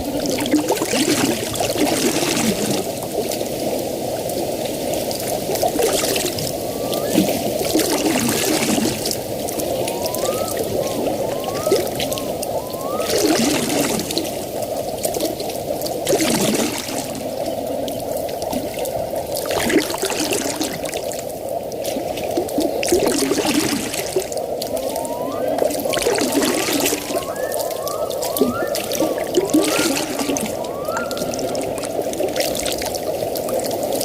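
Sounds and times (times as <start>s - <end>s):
water bubbling and trickling: 0.0s - 34.0s
hissing swell: 5.5s - 14.6s, 23.6s - 33.0s
short rising chirps: 6.0s - 14.2s, 24.8s - 31.8s.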